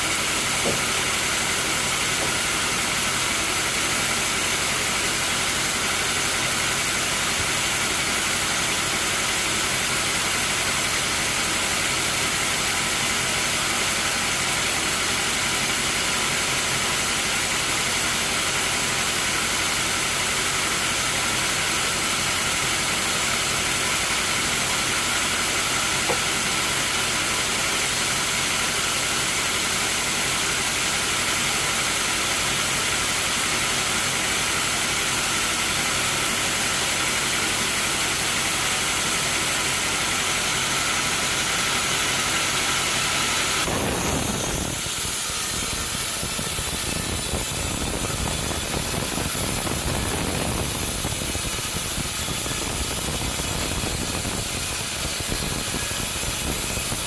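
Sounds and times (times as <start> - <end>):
sawmill machinery running: 0.0 - 57.0
hiss: 42.0 - 57.0.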